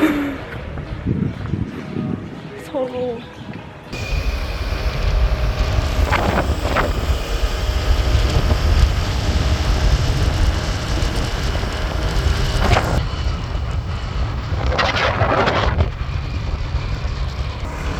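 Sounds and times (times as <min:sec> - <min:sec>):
wind buffeting microphone: 0:00.0 - 0:02.6, 0:03.4 - 0:17.9
motorbike engine running: 0:04.0 - 0:14.7, 0:15.7 - 0:17.9.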